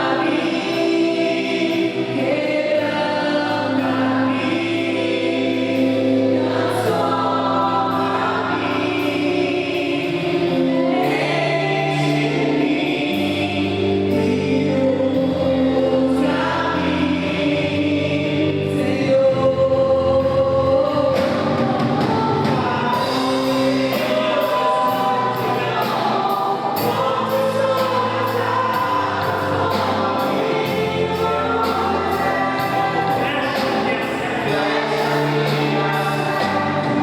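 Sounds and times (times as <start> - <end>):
band chords and bass: 0.0 - 37.0
group of voices singing: 0.0 - 37.0
steady high beat: 21.5 - 37.0.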